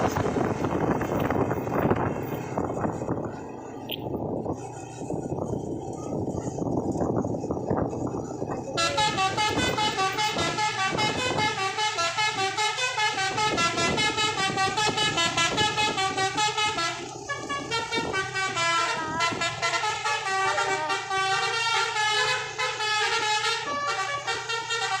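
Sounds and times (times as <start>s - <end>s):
bus air horns playing melody: 8.7s - 25.0s.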